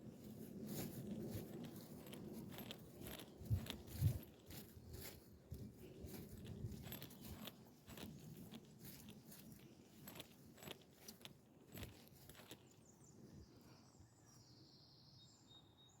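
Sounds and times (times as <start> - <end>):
footsteps crunching on path: 0.0 - 13.1.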